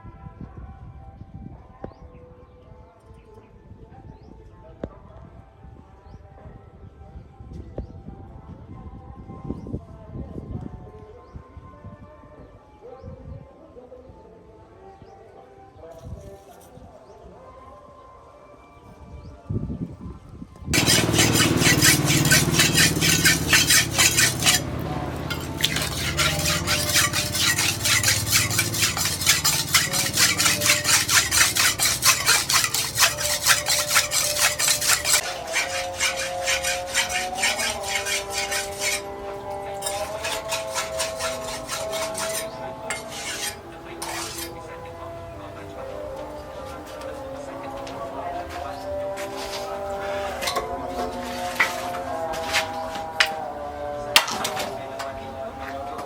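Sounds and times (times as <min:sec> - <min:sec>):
metal scraping on blade: 0:20.8 - 0:44.7, 0:49.2 - 0:53.4, 0:54.2 - 0:54.8.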